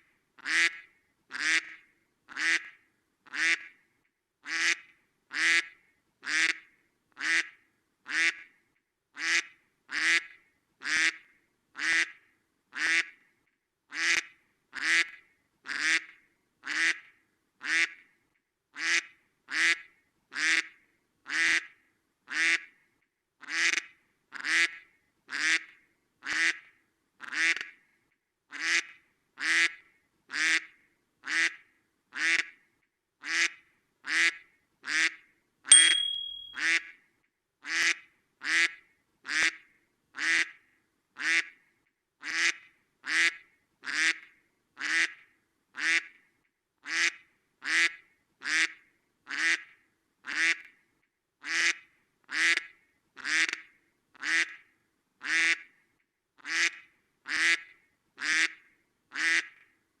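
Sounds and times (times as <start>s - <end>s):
high-pitched tone: 35.7s - 36.6s.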